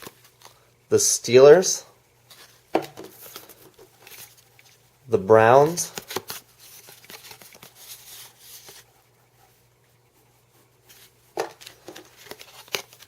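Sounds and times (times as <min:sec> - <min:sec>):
cards rustling: 0:00.0 - 0:00.7, 0:02.2 - 0:08.9, 0:10.7 - 0:13.0.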